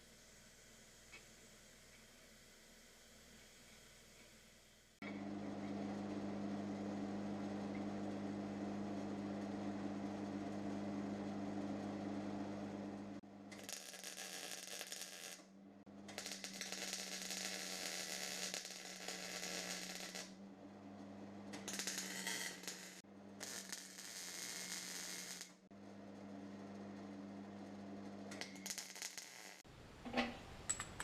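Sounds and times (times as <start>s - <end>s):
welder crackling and hissing: 0.0s - 9.5s, 12.4s - 20.4s, 21.5s - 25.7s, 28.3s - 29.6s
electrical hum: 5.0s - 28.8s.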